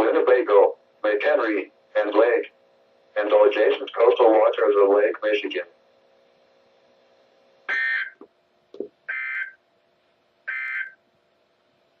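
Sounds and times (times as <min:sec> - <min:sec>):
faint steady hum: 0:00.0 - 0:12.0
digital data tone bursts: 0:09.1 - 0:09.6, 0:10.5 - 0:11.0.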